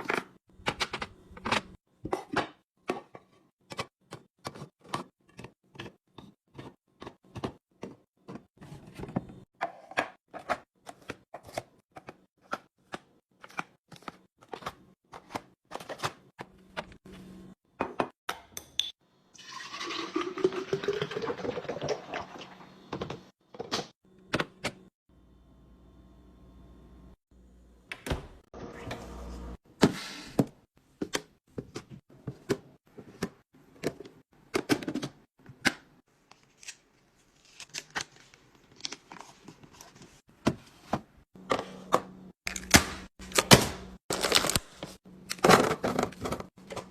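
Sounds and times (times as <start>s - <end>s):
food packages clicking and knocking: 40.4s - 46.9s.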